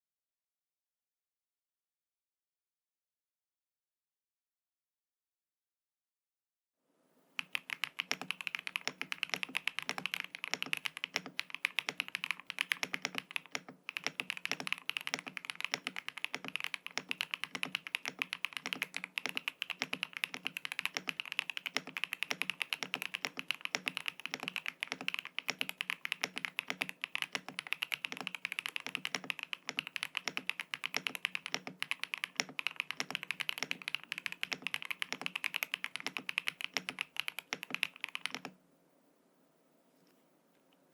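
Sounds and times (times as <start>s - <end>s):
mechanical keyboard typing: 7.4s - 38.6s.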